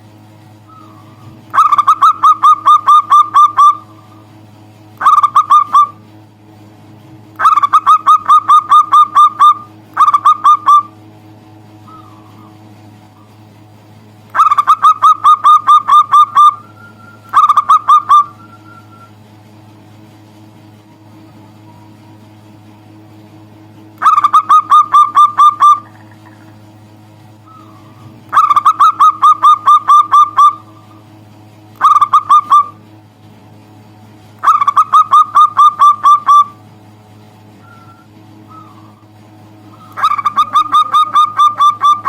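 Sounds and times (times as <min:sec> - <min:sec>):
steady low hum: 0:00.0 - 0:42.0
dove cooing: 0:00.7 - 0:04.2, 0:05.0 - 0:06.0, 0:07.4 - 0:11.0, 0:11.8 - 0:13.4, 0:14.3 - 0:19.2, 0:24.0 - 0:26.7, 0:27.4 - 0:31.0, 0:31.8 - 0:32.8, 0:34.4 - 0:36.6, 0:37.6 - 0:42.0.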